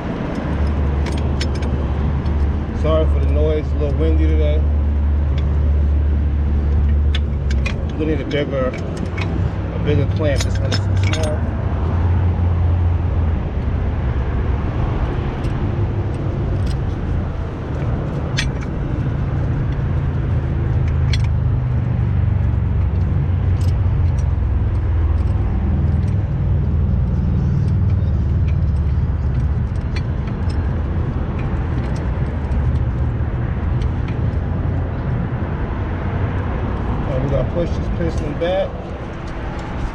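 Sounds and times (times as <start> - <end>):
metallic clinks of tools: 7.1 - 11.4.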